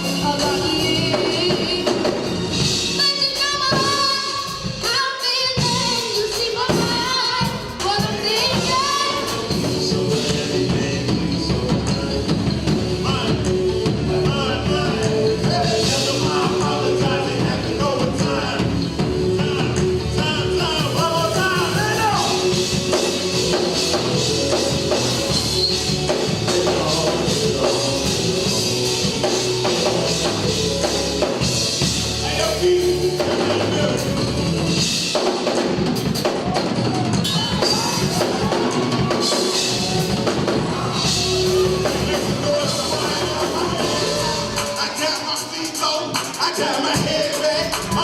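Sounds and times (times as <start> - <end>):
drum kit: 0.0 - 48.0
gospel music: 0.0 - 48.0
wavering vocal lines: 5.6 - 34.6, 37.3 - 48.0.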